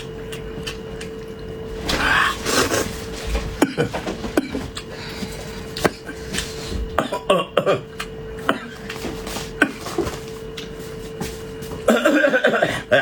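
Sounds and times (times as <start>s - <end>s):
chewing and slurping: 0.0s - 1.8s
faint steady hum: 0.0s - 13.0s.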